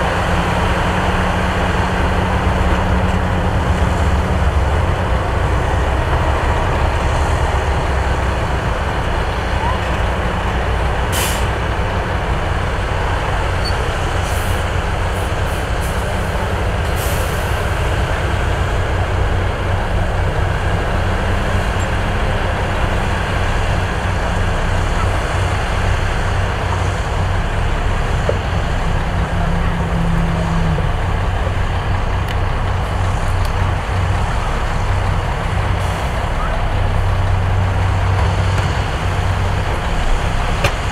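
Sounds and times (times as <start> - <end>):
diesel machinery droning: 0.0 - 40.9
short air hisses: 11.1 - 11.5.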